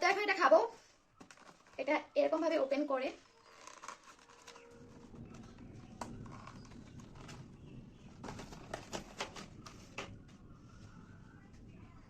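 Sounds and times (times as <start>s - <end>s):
low steady background: 0.0s - 12.0s
packaging clicks and crackles: 1.2s - 7.5s, 8.2s - 10.2s.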